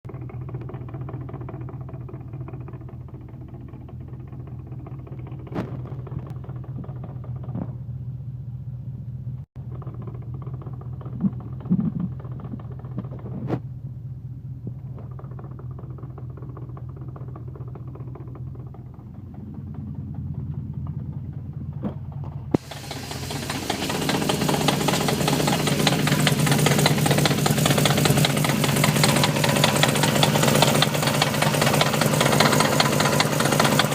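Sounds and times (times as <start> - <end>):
car engine low rumble: 0.0 - 33.9
cluster of thumps: 5.4 - 7.8.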